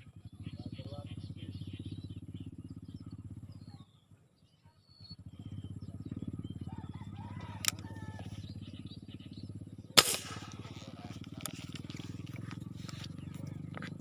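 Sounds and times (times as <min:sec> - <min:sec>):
small engine puttering: 0:00.0 - 0:04.1, 0:05.0 - 0:14.0
birds chirping: 0:00.0 - 0:14.0
sharp click: 0:07.6 - 0:07.9.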